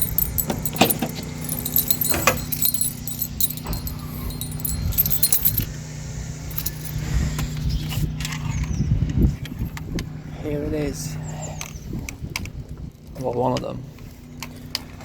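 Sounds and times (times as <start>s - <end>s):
metal fittings jingling and rattling: 0.0s - 5.7s, 6.5s - 7.0s.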